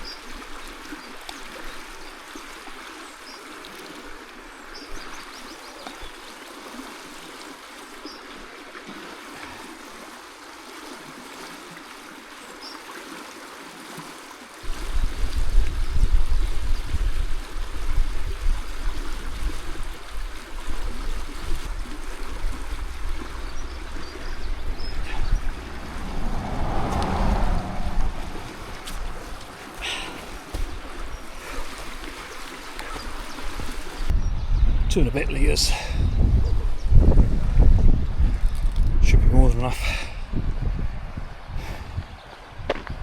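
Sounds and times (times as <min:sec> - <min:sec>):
stream trickling over rocks: 0:00.0 - 0:34.2, 0:34.9 - 0:43.0
loud low rumble: 0:25.0 - 0:29.7.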